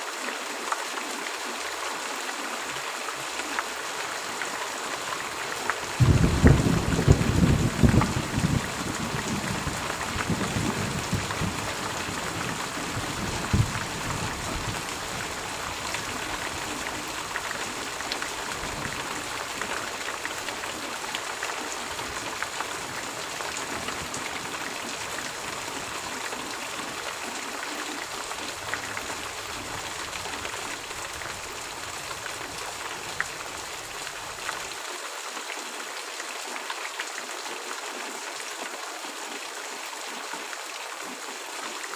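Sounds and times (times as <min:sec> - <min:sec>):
steady rain falling: 0:00.0 - 0:41.9
low thunder rumble: 0:06.0 - 0:15.4.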